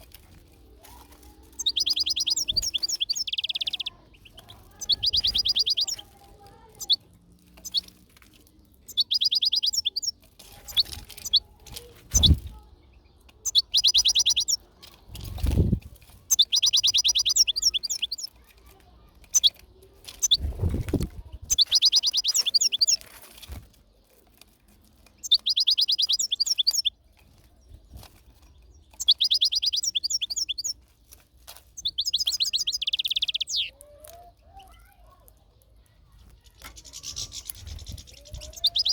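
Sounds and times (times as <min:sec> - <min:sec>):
goldfinch twittering song: 0:01.5 - 0:06.1, 0:06.8 - 0:07.0, 0:07.6 - 0:08.0, 0:08.6 - 0:18.4, 0:19.3 - 0:23.0, 0:25.2 - 0:27.0, 0:27.6 - 0:30.8, 0:31.8 - 0:33.8, 0:36.4 - 0:38.9.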